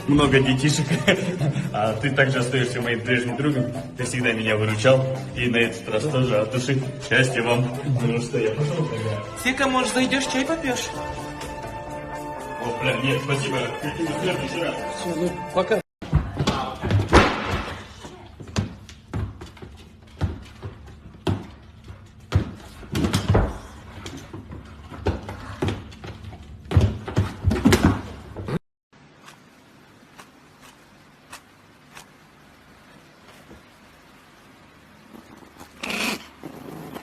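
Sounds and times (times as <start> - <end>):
loud irregular thuds and bangs: 16.0 - 19.4.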